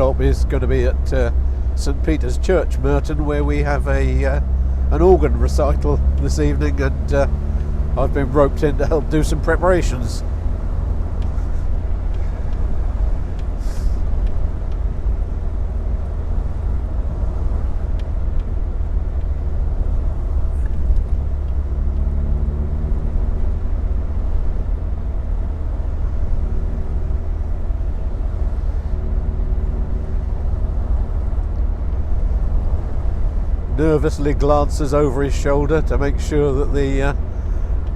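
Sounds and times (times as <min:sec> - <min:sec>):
car engine hum: 0:00.0 - 0:37.9.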